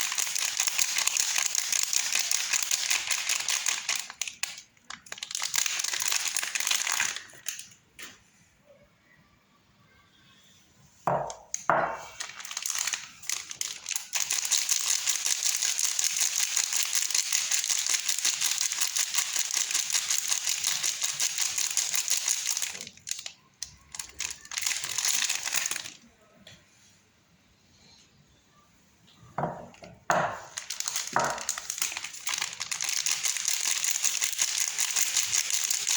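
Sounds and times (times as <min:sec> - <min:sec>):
packaging crinkling: 0:00.0 - 0:07.8, 0:11.1 - 0:26.0, 0:29.4 - 0:35.9.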